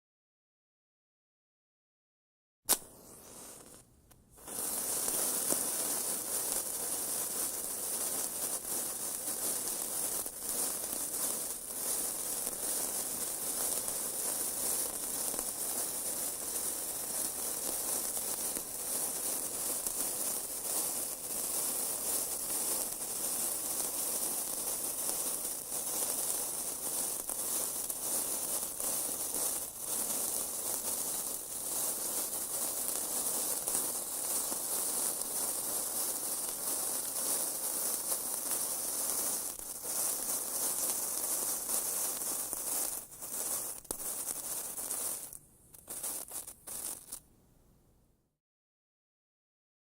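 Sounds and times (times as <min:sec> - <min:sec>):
fuse hissing and crackling: 0:02.7 - 0:47.2.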